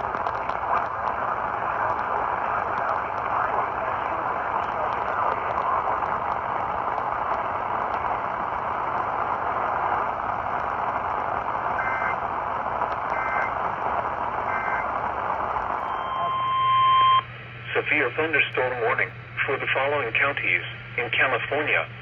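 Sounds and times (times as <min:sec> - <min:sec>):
radio static hiss: 0:00.0 - 0:22.0
loud steady alarm tone: 0:11.7 - 0:12.2, 0:13.0 - 0:13.6, 0:14.4 - 0:15.0
two-tone data chirps: 0:13.1 - 0:13.5, 0:14.5 - 0:14.8, 0:15.8 - 0:17.2.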